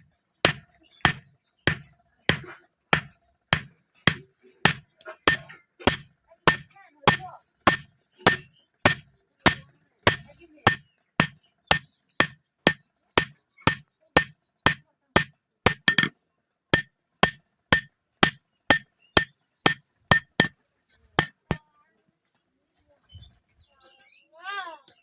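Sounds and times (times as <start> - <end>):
hammer striking iron on anvil: 0.5 - 16.1, 16.7 - 20.6, 21.2 - 21.6.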